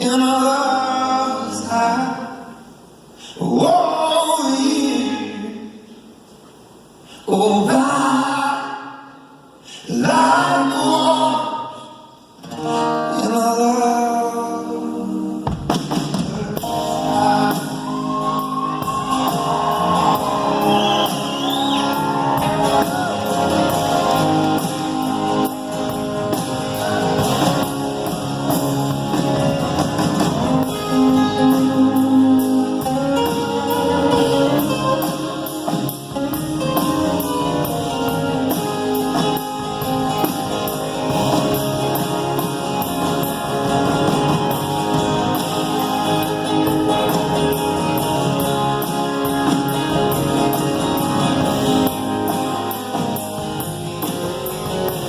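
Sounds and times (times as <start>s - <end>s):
live rock band playing: 14.7s - 55.0s
person singing: 16.3s - 21.1s.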